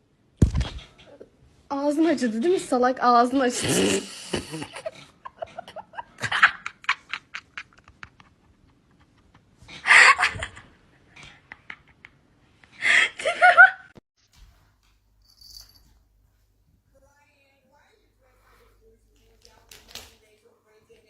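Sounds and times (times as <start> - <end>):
person laughing: 4.1 - 12.2.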